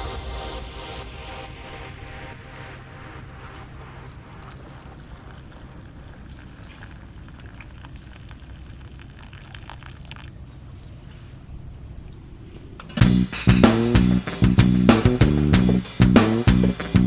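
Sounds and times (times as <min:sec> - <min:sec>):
water lapping and dripping: 0:01.6 - 0:11.4.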